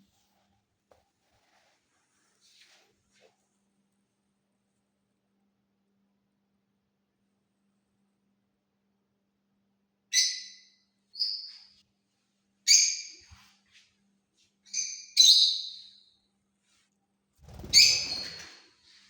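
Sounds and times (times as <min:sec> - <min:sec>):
lovebird chirping: 0:17.5 - 0:18.4.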